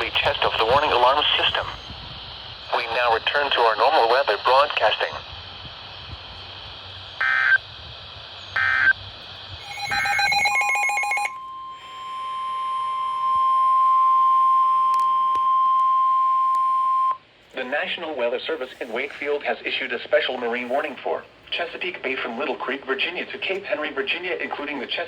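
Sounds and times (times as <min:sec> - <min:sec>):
radio hiss: 0:00.0 - 0:12.1, 0:17.5 - 0:25.0
digital data bursts: 0:07.2 - 0:07.6, 0:08.6 - 0:09.0, 0:09.6 - 0:11.3
single-pitch warning alarm tone: 0:07.2 - 0:07.6, 0:08.6 - 0:09.0, 0:09.6 - 0:17.2.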